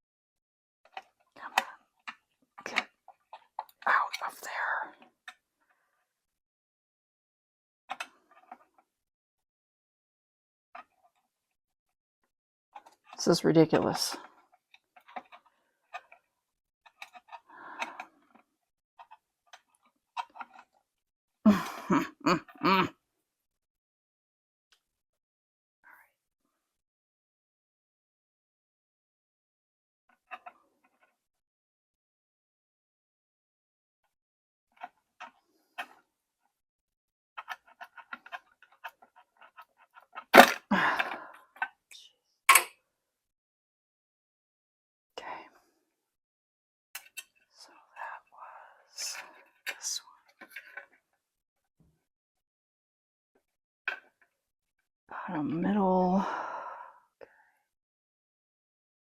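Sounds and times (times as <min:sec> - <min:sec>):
person making short vocal sounds: 0:21.5 - 0:23.0.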